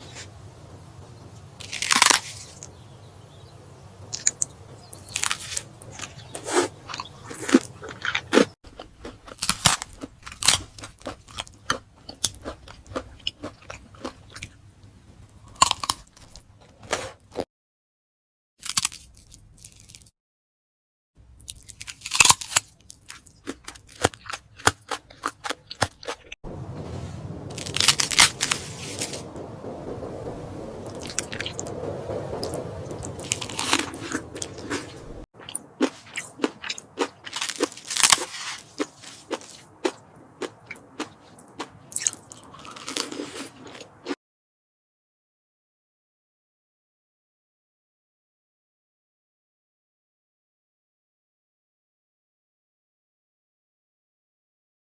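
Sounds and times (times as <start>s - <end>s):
person crunching food: 1.6s - 2.8s, 4.1s - 14.6s, 15.3s - 17.5s, 18.6s - 20.1s, 21.4s - 26.4s, 27.5s - 29.2s, 33.2s - 44.2s.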